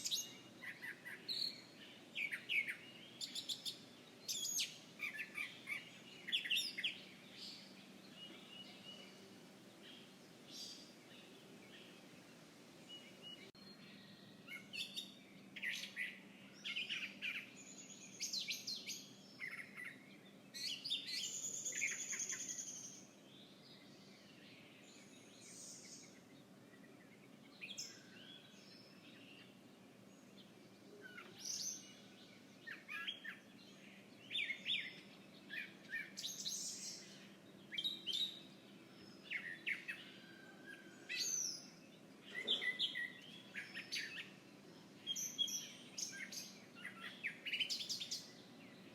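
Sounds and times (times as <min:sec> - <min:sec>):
birds chirping: 0:00.0 - 0:48.9.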